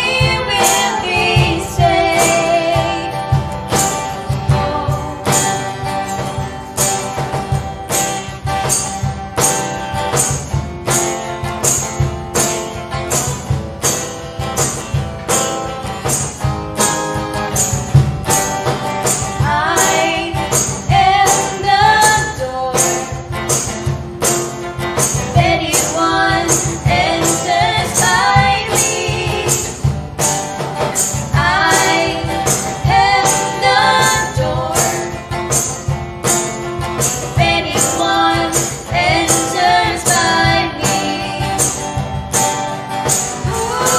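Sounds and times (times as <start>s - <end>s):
person singing: 0.0s - 3.3s, 4.4s - 5.8s, 43.4s - 43.9s
instrumental music with steady beat: 0.0s - 43.9s.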